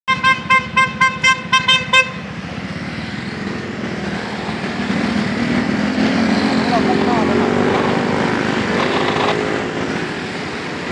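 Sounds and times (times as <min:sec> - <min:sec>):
motorcycle horn tooting: 0:00.1 - 0:02.3
motorcycle engine and wind: 0:02.1 - 0:10.9.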